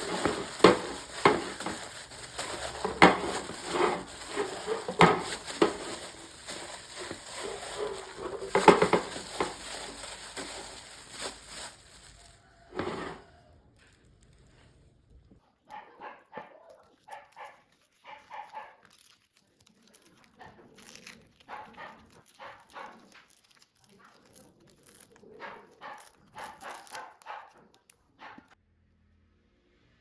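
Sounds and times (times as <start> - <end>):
dog barking: 15.4 - 18.9, 21.4 - 23.2, 25.3 - 28.6.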